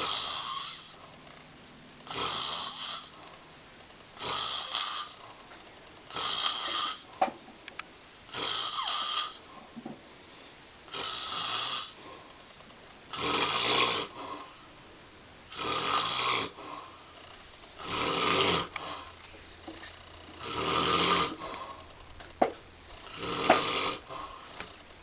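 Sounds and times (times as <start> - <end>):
person snoring: 0.0 - 1.2, 2.0 - 3.4, 4.2 - 5.4, 6.1 - 7.1, 8.3 - 9.5, 10.9 - 12.3, 13.1 - 14.6, 15.5 - 19.2, 20.0 - 22.0, 23.0 - 24.8.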